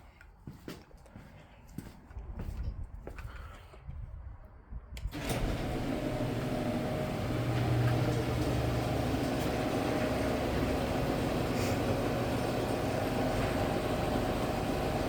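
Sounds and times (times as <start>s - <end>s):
garage door opener click: 5.0s - 15.0s
garage door opener motor running: 5.1s - 15.0s.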